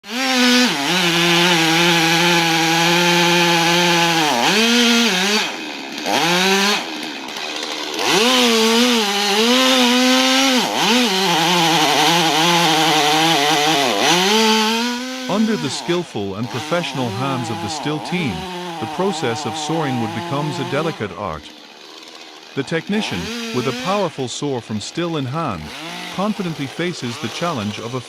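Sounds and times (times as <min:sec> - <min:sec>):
chainsaw cutting wood: 0:00.0 - 0:28.0.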